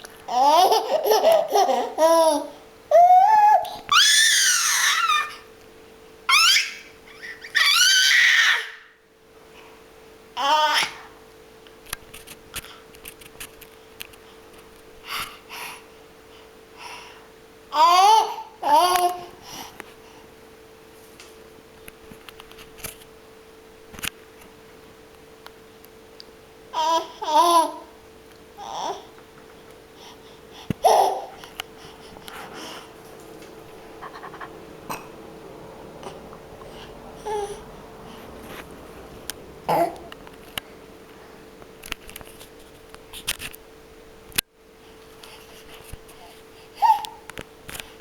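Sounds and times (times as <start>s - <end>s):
faint steady hum: 0.0s - 48.0s
baby squealing: 0.7s - 5.5s, 6.3s - 8.9s, 46.8s - 47.2s
soft breathy sounds: 29.9s - 40.1s.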